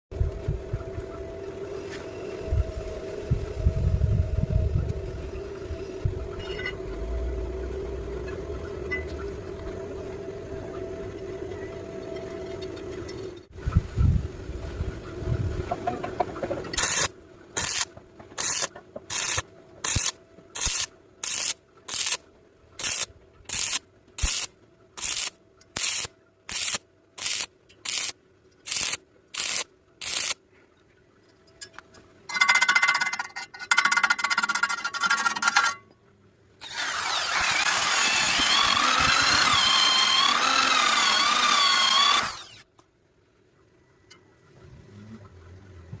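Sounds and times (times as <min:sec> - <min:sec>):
motorised tool whining: 0:36.6 - 0:42.7.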